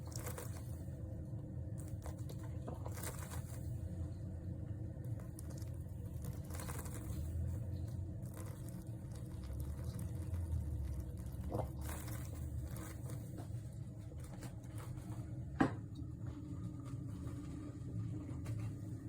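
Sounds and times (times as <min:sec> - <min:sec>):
steady low hum: 0:00.0 - 0:19.0
liquid trickling and pattering: 0:05.1 - 0:15.0.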